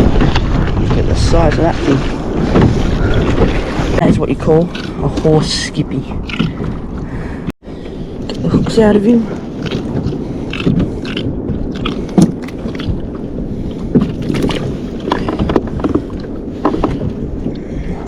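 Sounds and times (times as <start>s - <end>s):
knocks and scrapes of fish handling: 0.0s - 5.4s, 9.6s - 13.0s, 13.8s - 17.5s
water noise around kayak: 0.0s - 18.0s
wind: 0.0s - 18.0s.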